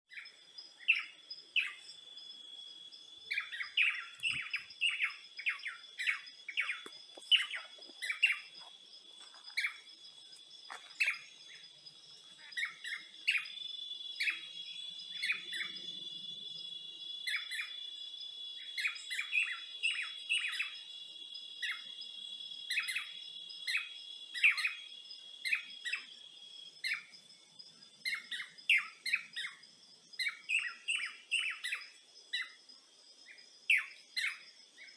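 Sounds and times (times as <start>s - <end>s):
high-pitched insect trill: 0.1s - 34.9s
songbirds chirping: 0.1s - 34.9s.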